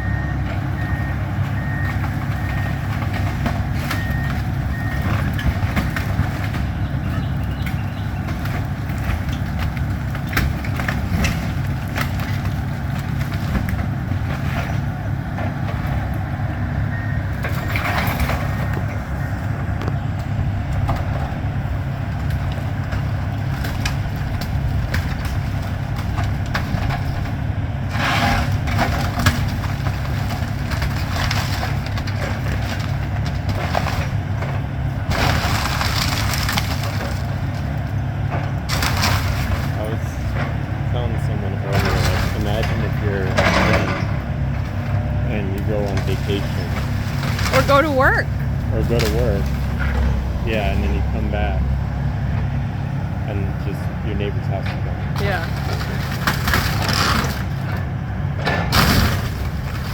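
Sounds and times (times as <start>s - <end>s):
excavator diesel engine running: 0.0s - 59.9s
wood and debris breaking: 0.9s - 16.4s, 17.3s - 52.4s, 54.4s - 59.9s
backup alarm beeping: 16.9s - 17.8s.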